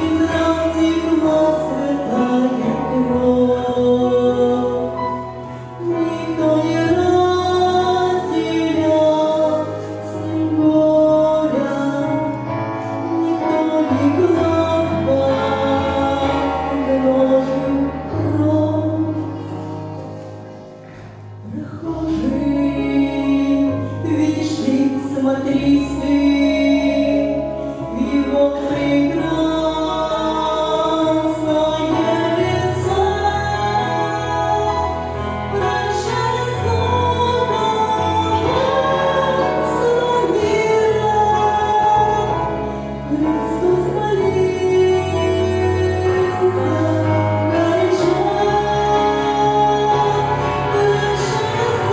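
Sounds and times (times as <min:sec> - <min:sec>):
sustained bass notes: 0:00.0 - 0:20.0, 0:21.1 - 0:51.9
voices singing a religious song: 0:28.1 - 0:51.9.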